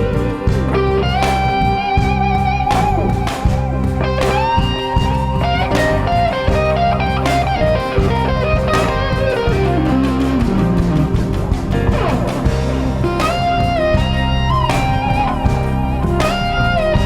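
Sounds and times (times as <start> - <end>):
electric guitar solo: 0.0 - 11.2
bass and drums: 0.0 - 17.0.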